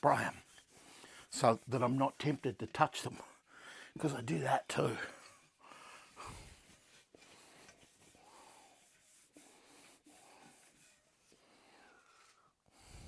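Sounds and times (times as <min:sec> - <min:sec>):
cloth rubbing on metal: 0:00.0 - 0:03.2, 0:06.2 - 0:12.4.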